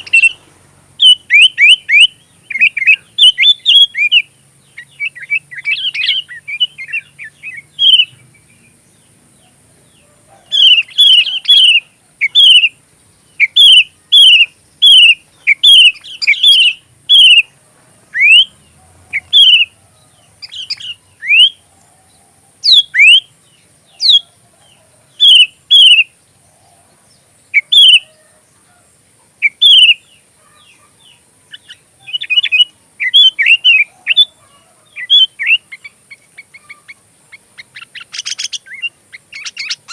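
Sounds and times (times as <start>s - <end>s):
bird singing bright notes: 0.0s - 26.1s.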